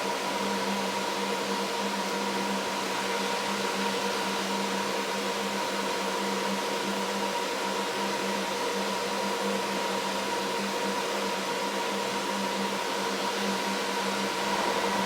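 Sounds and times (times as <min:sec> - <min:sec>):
cooling fans whirring: 0:12.7 - 0:15.0.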